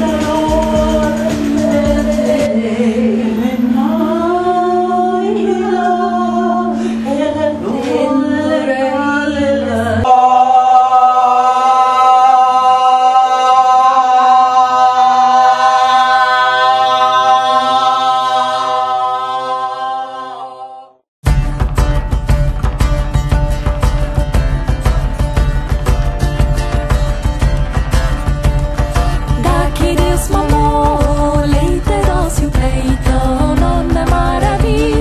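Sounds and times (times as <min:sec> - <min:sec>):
person singing: 0:29.3 - 0:35.0.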